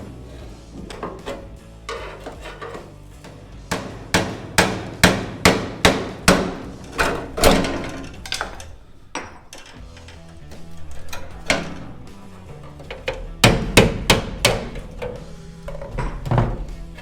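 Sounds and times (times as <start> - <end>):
hammer striking steel car body: 3.6 - 17.0.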